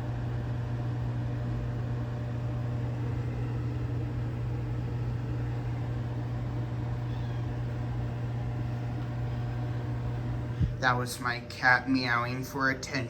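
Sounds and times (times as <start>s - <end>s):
microwave oven humming: 0.0s - 13.0s
cat meowing: 7.0s - 7.6s.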